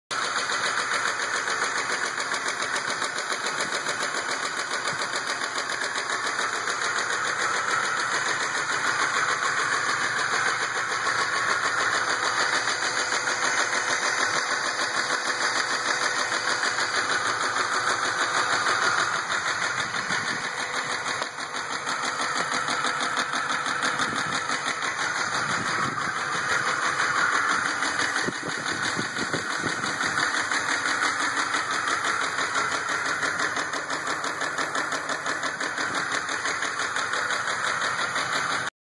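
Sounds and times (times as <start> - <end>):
truck engine knocking: 0.1 - 38.7.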